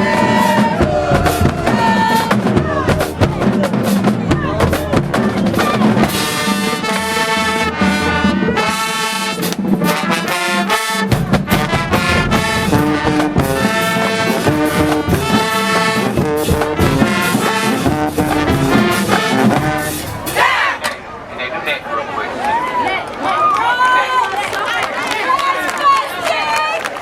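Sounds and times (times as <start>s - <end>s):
drum hits: 0.0s - 9.9s, 11.0s - 21.1s
marching band brass playing: 0.0s - 21.3s.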